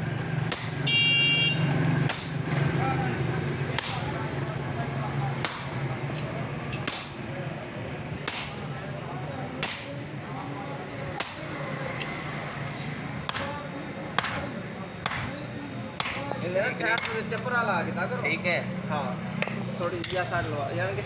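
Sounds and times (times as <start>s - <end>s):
hammer striking chisel on steel: 0.5s - 1.2s, 2.0s - 3.1s, 3.8s - 4.7s, 5.4s - 12.2s, 12.8s - 17.5s.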